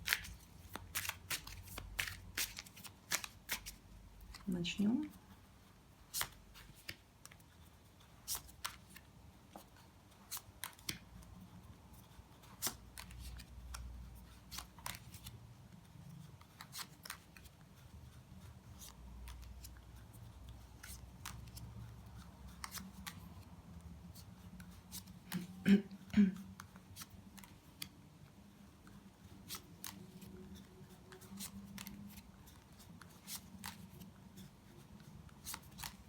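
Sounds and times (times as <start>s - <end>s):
cards snapping and tapping: 0.0s - 4.4s, 35.4s - 36.0s.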